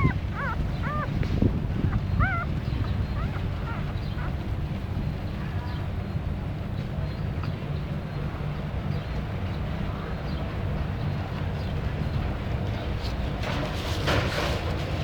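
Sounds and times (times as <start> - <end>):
newborn puppies squeaking: 0.0 - 1.2, 1.9 - 4.4
steady low hum: 0.0 - 13.6.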